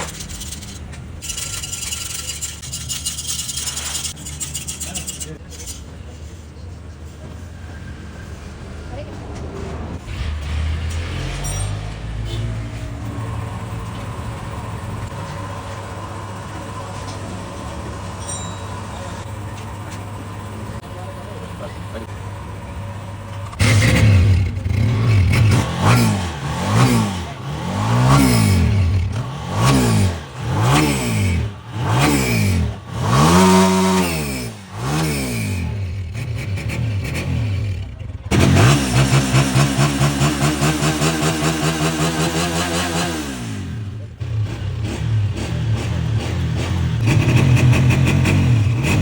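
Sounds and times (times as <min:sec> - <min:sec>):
motorcycle engine running steadily: 0:12.3 - 0:49.0.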